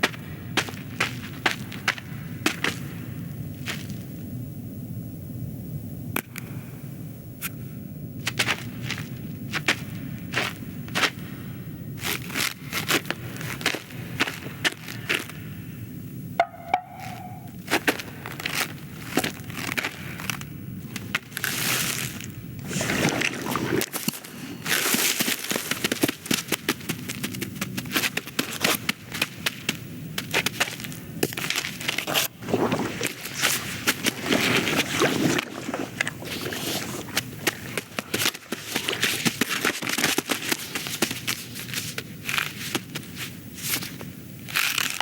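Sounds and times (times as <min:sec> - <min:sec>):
small clicks crackles and rustles: 0:17.6 - 0:45.0.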